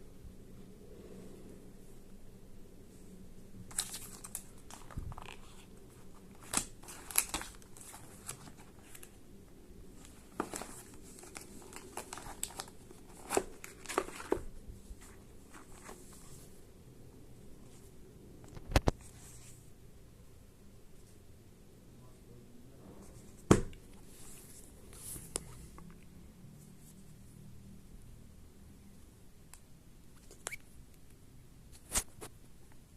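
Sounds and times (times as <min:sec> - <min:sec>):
packaging rustling: 0:03.7 - 0:09.2, 0:10.0 - 0:16.1
plastic wrap crinkling and tearing: 0:03.7 - 0:09.2, 0:10.0 - 0:14.5.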